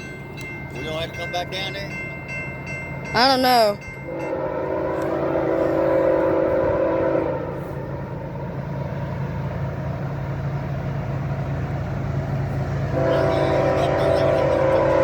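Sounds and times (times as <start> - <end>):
freight train rumbling past: 0.0 - 15.0
train air horn chord: 4.1 - 8.3, 12.9 - 15.0.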